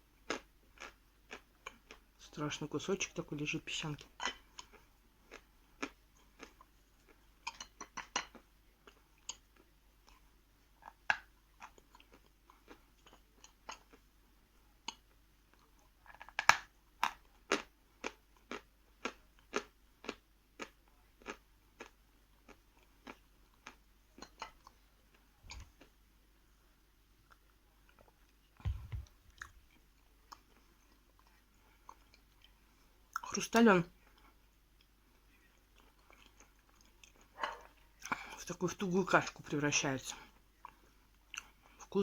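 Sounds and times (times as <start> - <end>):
chalk crunching while chewed: 0.3 - 2.0, 14.9 - 25.9.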